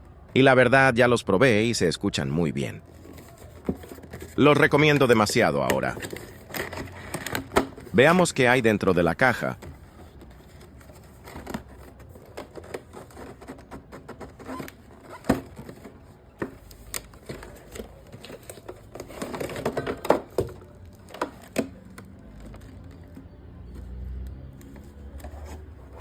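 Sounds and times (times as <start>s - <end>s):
packaging crinkling and clicking: 2.8s - 8.2s, 9.1s - 23.2s.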